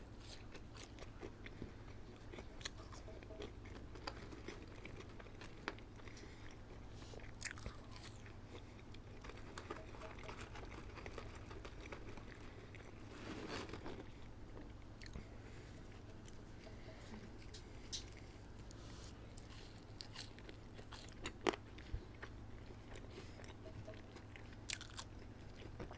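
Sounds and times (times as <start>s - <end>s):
person chewing food: 0.1s - 25.9s
crisp food crunches: 2.2s - 15.3s, 19.4s - 25.9s.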